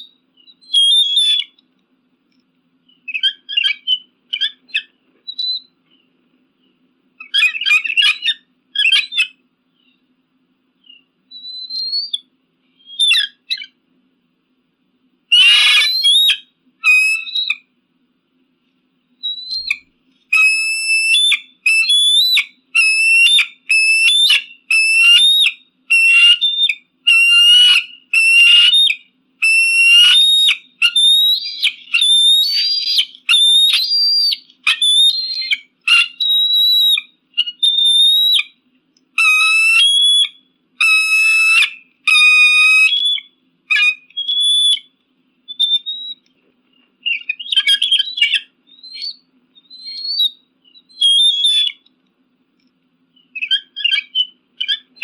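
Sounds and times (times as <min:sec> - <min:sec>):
eagle calling: 0:00.0 - 0:01.6, 0:02.9 - 0:05.8, 0:07.2 - 0:10.0, 0:10.8 - 0:13.8, 0:15.3 - 0:17.7, 0:19.2 - 0:38.6, 0:39.2 - 0:46.3, 0:47.0 - 0:51.9, 0:53.1 - 0:55.0
repeated yelping notes: 0:20.4 - 0:38.5, 0:39.2 - 0:44.8.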